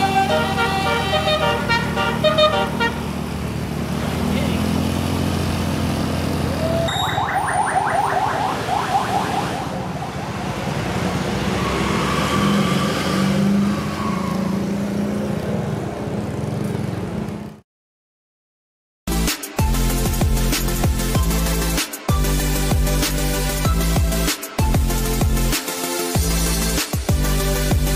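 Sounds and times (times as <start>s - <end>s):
held horn note: 0.0s - 3.1s
warbling musical bus horn: 0.0s - 3.3s
diesel bus engine running: 0.0s - 6.9s.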